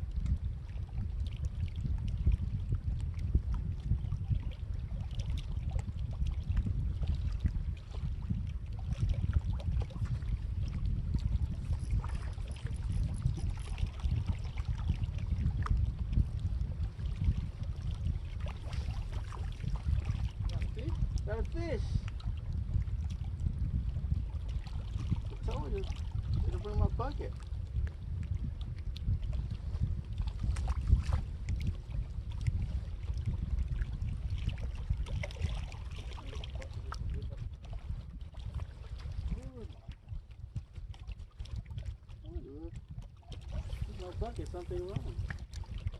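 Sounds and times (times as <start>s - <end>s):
wind buffeting microphone: 0.0s - 45.9s
water sloshing: 8.6s - 15.7s, 17.1s - 22.3s, 29.2s - 45.9s.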